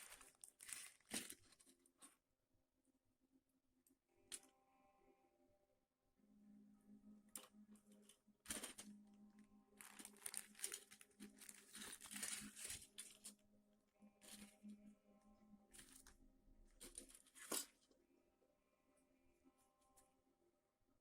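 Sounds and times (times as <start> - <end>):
packaging crinkling and rustling: 0.0 - 2.1, 8.5 - 9.0, 9.8 - 13.4, 14.2 - 14.6, 15.8 - 16.1, 16.8 - 17.9.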